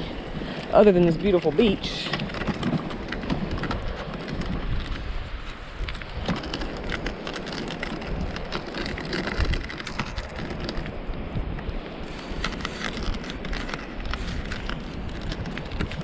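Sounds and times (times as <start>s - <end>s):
footsteps crunching on shells: 2.2s - 11.0s.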